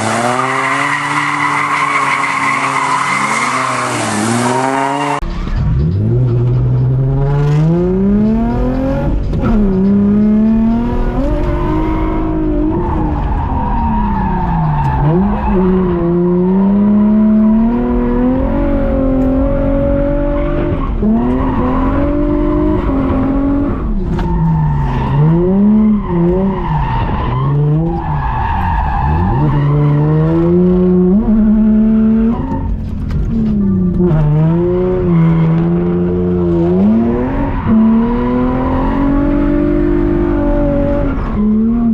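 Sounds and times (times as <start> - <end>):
tyre squeal: 0.0 - 5.2
car engine revving: 0.0 - 41.9.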